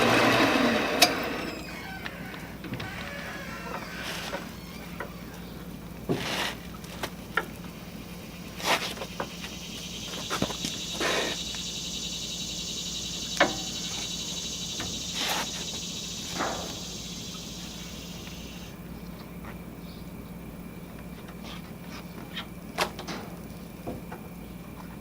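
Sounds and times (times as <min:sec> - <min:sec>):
high-pitched cutting whine: 0:00.0 - 0:05.6
machine low hum: 0:00.0 - 0:25.0.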